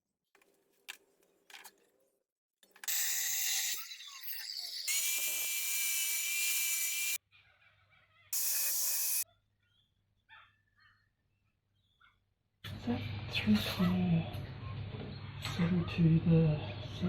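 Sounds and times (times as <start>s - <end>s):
power tool grinding steel: 2.9s - 7.2s, 8.4s - 9.2s.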